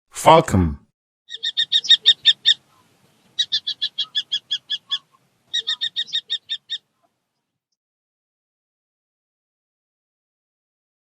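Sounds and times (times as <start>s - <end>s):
falcon calling: 1.3s - 7.2s.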